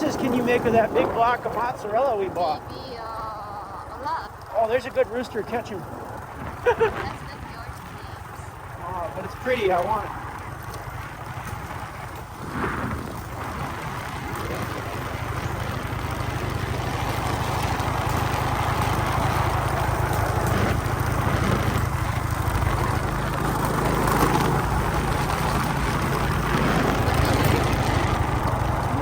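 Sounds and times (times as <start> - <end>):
motorcycle engine running: 0.0 - 29.0
road noise: 0.0 - 29.0.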